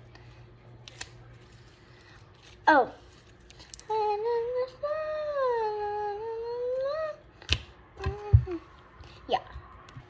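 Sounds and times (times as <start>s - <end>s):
child humming: 3.9s - 7.2s, 8.0s - 8.7s.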